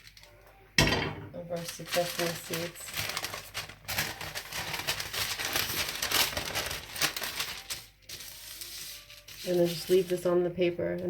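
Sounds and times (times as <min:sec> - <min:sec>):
paper crinkling and rustling: 0:00.0 - 0:00.4, 0:01.5 - 0:10.5.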